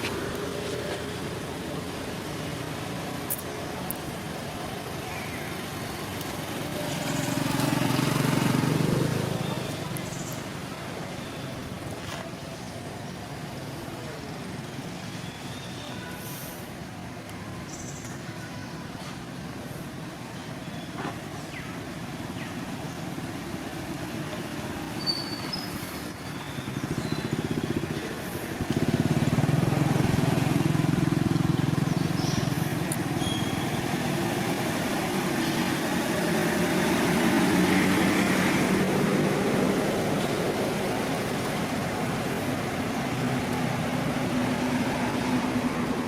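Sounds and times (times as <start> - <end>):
motor engine running: 26.5 - 45.6.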